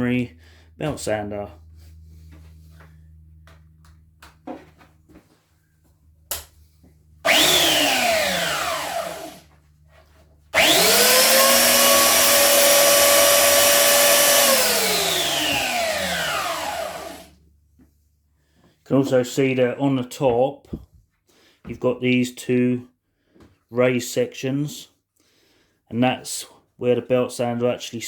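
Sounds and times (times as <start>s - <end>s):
belt sander motor whine: 7.2s - 9.5s, 10.6s - 17.3s.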